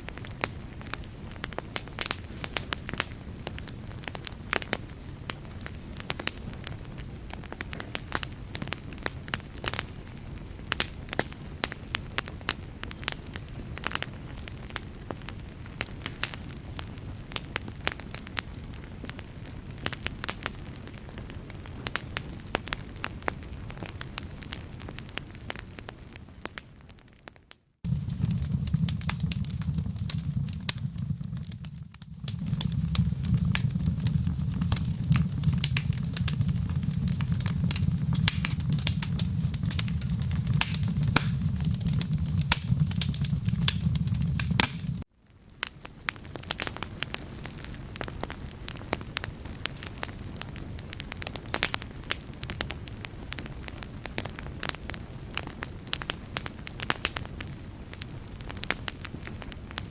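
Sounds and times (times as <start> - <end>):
wood fire crackling: 0.0 - 59.9
low steady rumble: 27.9 - 45.0.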